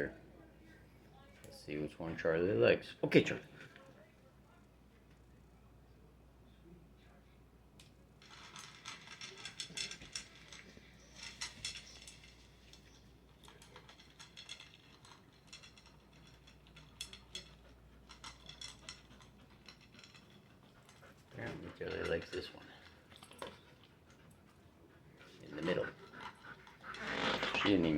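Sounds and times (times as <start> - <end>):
dog eating from dish: 8.2 - 27.9.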